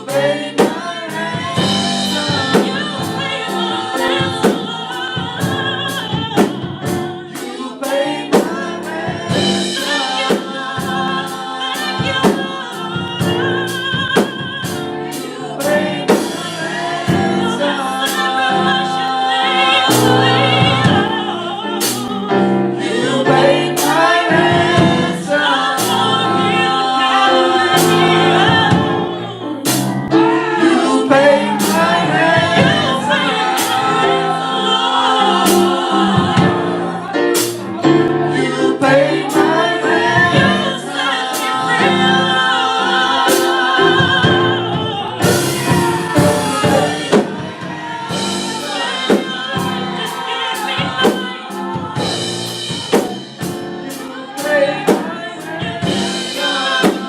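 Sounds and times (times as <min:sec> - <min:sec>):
gospel choir singing: 0:00.0 - 0:57.0
music with percussive beat: 0:29.7 - 0:57.0.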